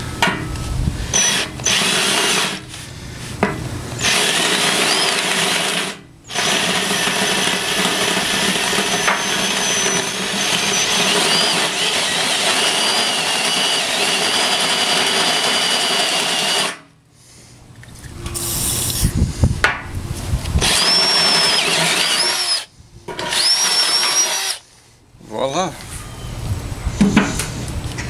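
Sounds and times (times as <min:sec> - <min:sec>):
drill boring through steel: 0:01.1 - 0:02.7, 0:04.0 - 0:16.8, 0:20.6 - 0:24.6.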